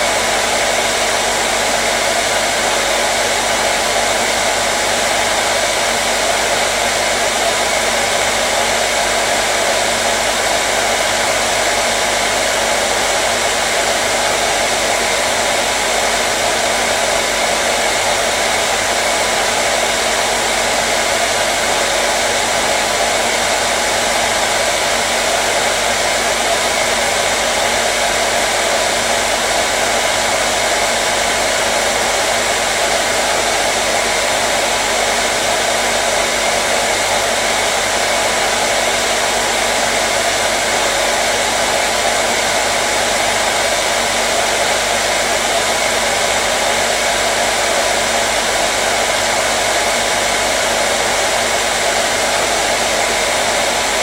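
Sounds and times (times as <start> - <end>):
hair dryer running: 0.0 - 54.0.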